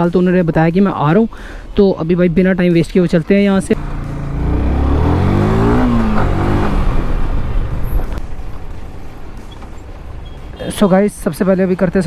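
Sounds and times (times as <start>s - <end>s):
motorcycle engine accelerating: 3.8s - 10.4s.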